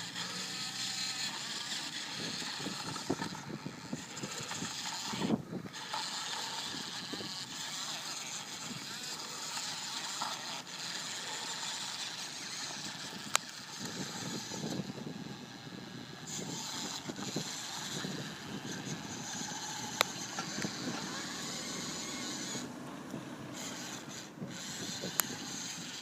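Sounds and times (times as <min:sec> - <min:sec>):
radio-controlled car running: 0:00.0 - 0:26.0
sharp clicks: 0:11.8 - 0:14.8, 0:16.3 - 0:24.2.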